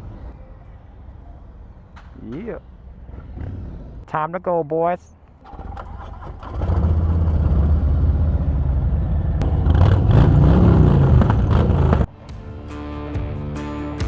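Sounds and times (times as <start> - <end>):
motorcycle engine revving: 5.4 - 12.1.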